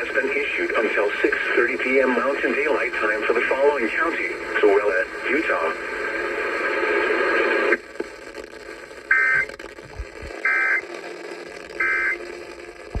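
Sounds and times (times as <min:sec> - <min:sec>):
faint radio hiss and hum: 0:00.0 - 0:13.0
warbling digital data tones: 0:09.1 - 0:10.9, 0:11.7 - 0:12.2.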